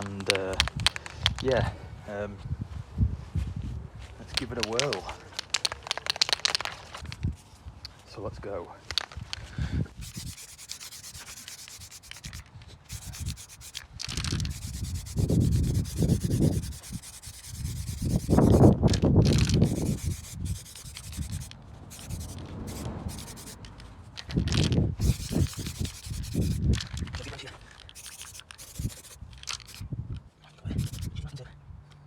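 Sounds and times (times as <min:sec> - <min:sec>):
rubbing and scraping: 0:09.9 - 0:26.9, 0:27.8 - 0:29.8, 0:30.8 - 0:31.1.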